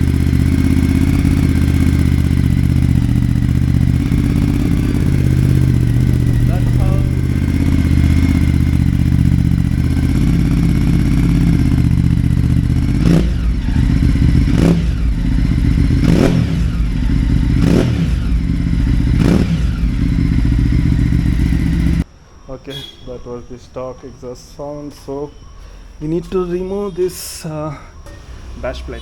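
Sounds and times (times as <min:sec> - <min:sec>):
motorcycle engine idling and revving: 0:00.0 - 0:22.1.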